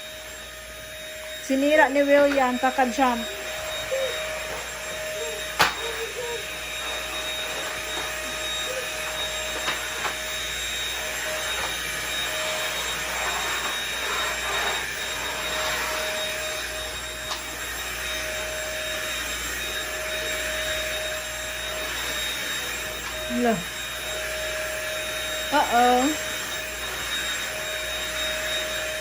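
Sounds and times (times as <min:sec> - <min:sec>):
vacuum cleaner whining: 0:00.0 - 0:29.0.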